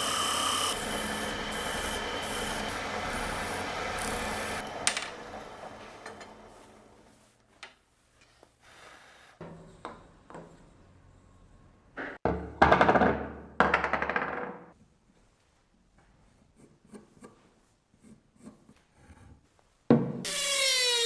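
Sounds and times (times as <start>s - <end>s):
high wavering whine: 0.0s - 6.2s.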